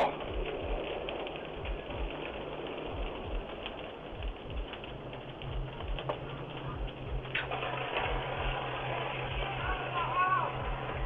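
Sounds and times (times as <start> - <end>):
fire crackling and popping: 0.0 - 11.0
low rumble: 0.0 - 11.0
steady low hum: 0.0 - 11.0.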